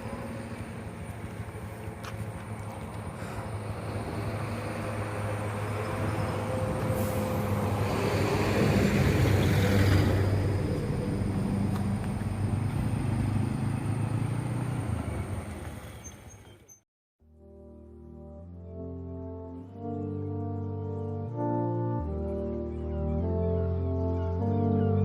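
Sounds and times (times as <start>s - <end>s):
heavy vehicle passing: 0.0s - 16.3s
music: 17.2s - 25.0s.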